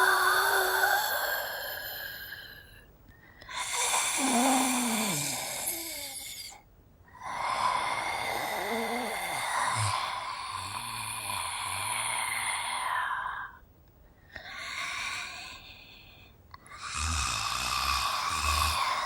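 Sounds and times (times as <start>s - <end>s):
female zombie raspy moan: 0.0s - 1.9s.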